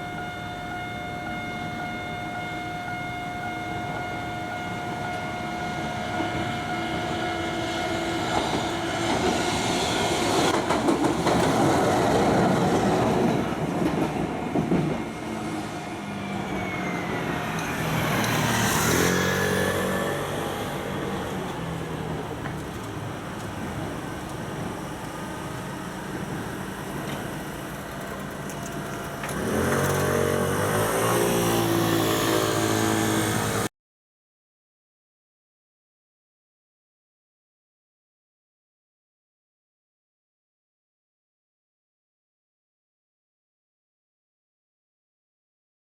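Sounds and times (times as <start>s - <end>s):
train wheels clattering over rails: 6.2s - 15.6s, 21.3s - 33.4s.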